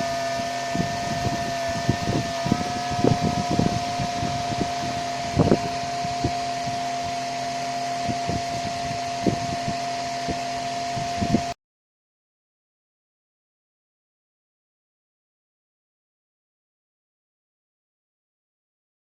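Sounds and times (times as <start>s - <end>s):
small motor whine: 0.0s - 11.6s.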